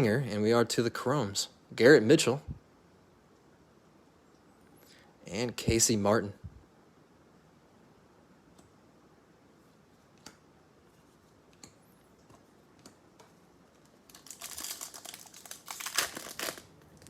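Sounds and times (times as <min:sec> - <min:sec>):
foil wrapper crinkling: 0:13.8 - 0:17.0.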